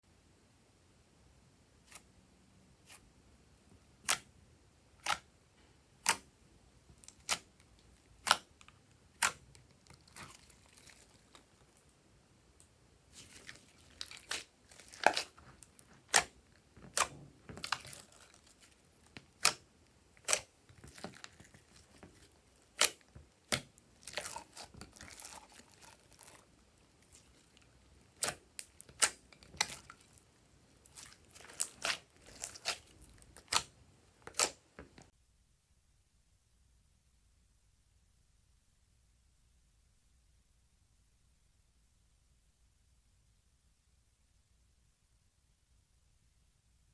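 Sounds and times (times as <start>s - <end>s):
crinkling and tearing: 9.2s - 11.9s, 13.1s - 19.6s, 20.2s - 35.1s.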